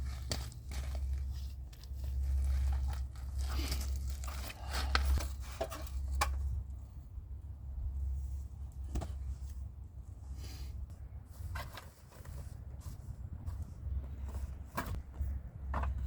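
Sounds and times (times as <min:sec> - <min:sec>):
crinkling and crunching handling: 0:00.0 - 0:06.6.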